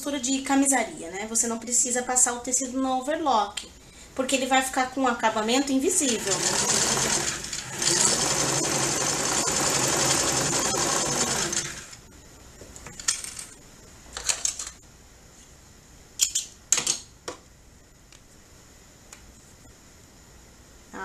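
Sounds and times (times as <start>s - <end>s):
sewing machine running: 6.0s - 12.0s.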